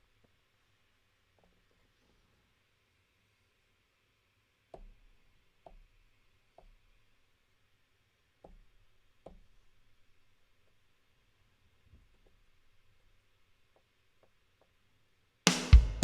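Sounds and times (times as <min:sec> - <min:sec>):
faint sharp knocks with thuds: 0:04.7 - 0:05.9.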